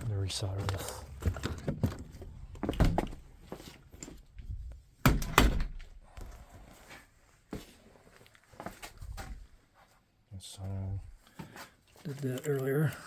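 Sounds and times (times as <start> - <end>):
knocks and thumps of handling: 0.6 - 6.2.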